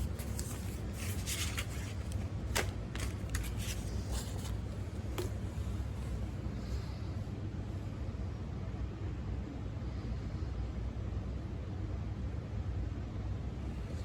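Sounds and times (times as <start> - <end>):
packaging rustling and crinkling: 0.0 - 6.0
steady low hum: 0.0 - 14.0.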